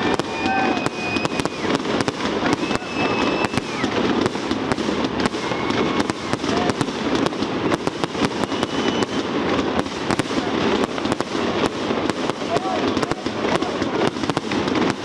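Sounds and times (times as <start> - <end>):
firework bangs and crackles: 0.0 - 15.0
thin whistling tones: 0.3 - 1.8, 2.5 - 3.9, 8.4 - 9.3.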